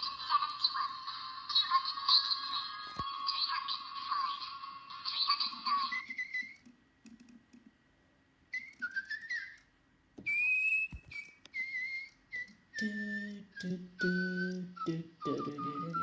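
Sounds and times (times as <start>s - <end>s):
toy bird electronic chirps: 0.1s - 6.7s, 8.6s - 9.7s, 10.3s - 13.2s.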